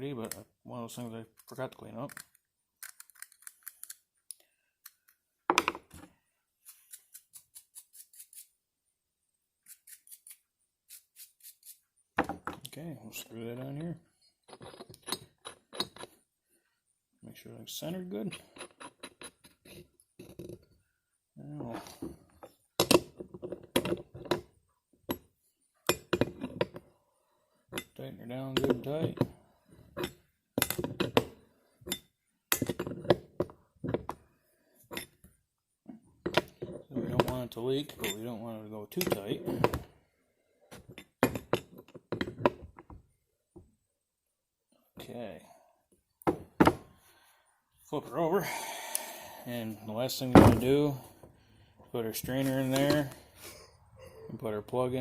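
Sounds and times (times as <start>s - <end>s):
hand tool clinking on metal: 37.0s - 38.4s.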